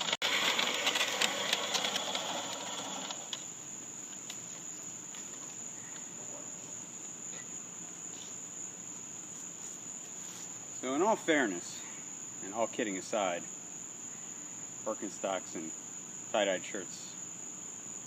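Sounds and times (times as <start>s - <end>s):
reel mower clicking and whirring: 0.0s - 3.5s
insects trilling: 0.0s - 18.0s.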